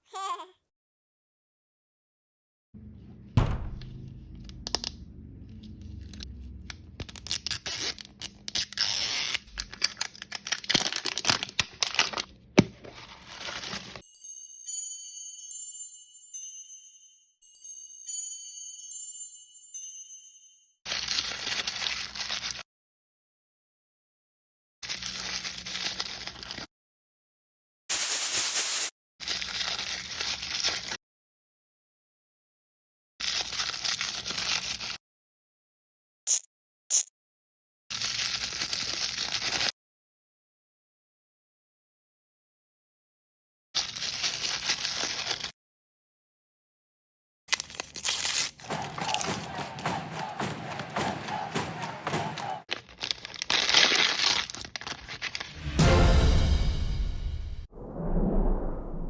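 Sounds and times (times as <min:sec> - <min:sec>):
packaging tearing and crinkling: 0:07.0 - 0:14.0, 0:24.9 - 0:26.6, 0:33.2 - 0:34.9, 0:37.9 - 0:39.7, 0:43.8 - 0:45.5, 0:47.5 - 0:48.7, 0:52.7 - 0:55.6.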